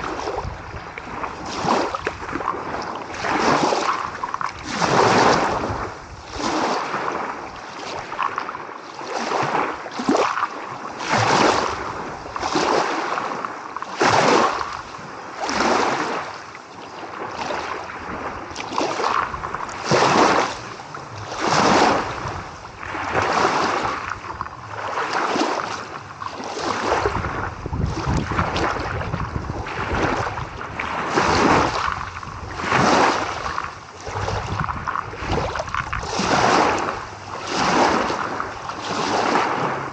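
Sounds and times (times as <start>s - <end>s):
low wind rumble on microphone: 0.0s - 39.9s
small waves lapping on shore: 0.0s - 39.9s.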